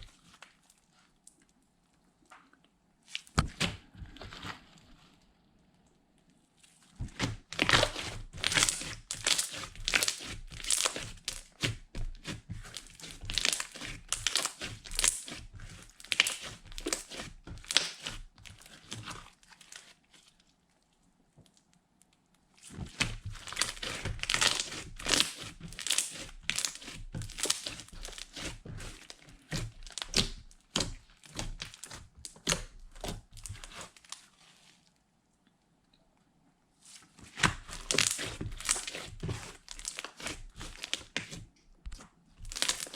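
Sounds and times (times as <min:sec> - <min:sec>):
slime squished by hand: 0:06.6 - 0:20.3, 0:22.6 - 0:34.8, 0:37.2 - 0:42.9.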